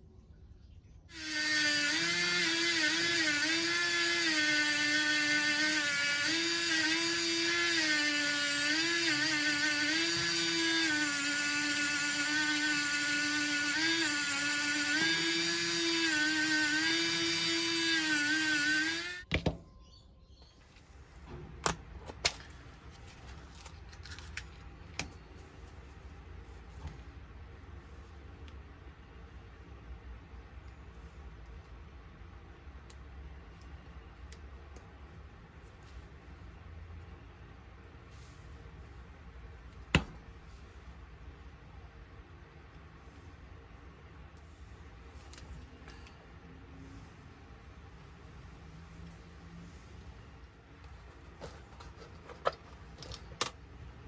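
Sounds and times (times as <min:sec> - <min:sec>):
small electric power tool whirring: 0:01.1 - 0:19.3.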